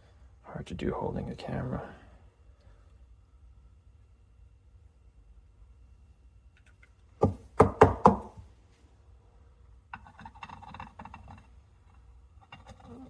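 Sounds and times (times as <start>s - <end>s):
sharp knocks on countertop: 7.2s - 8.3s.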